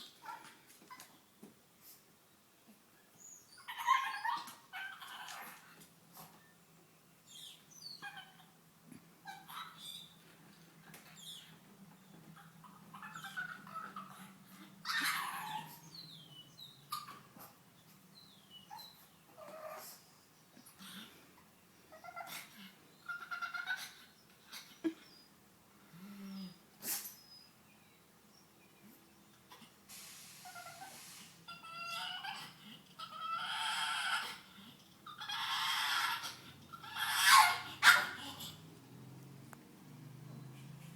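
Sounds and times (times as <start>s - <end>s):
dog high squeaky whines: 3.6s - 5.5s, 30.4s - 34.4s, 35.1s - 38.6s
dog squeaking and whining: 3.6s - 5.8s, 7.3s - 8.5s, 9.2s - 10.2s, 11.0s - 11.7s, 12.4s - 16.0s, 21.9s - 24.7s, 30.4s - 38.6s.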